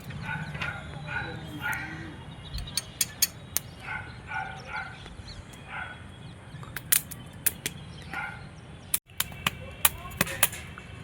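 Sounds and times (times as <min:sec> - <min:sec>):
dog barking: 0:00.1 - 0:02.2, 0:03.8 - 0:05.0, 0:05.6 - 0:06.0, 0:08.1 - 0:08.5
sharp cracks or pops: 0:06.7 - 0:07.8, 0:09.0 - 0:10.8.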